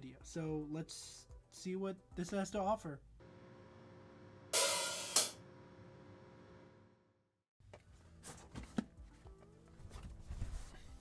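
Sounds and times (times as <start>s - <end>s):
cymbal crash: 4.6s - 5.4s.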